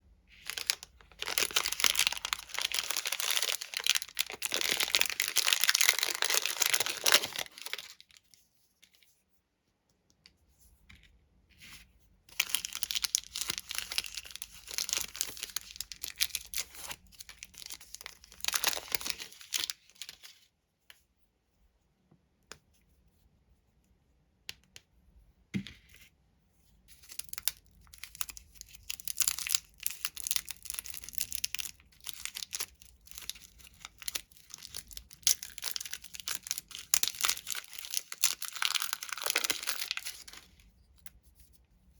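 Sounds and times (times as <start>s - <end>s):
plastic wrappers crinkling: 0.3s - 8.2s, 12.3s - 20.3s, 27.0s - 40.6s.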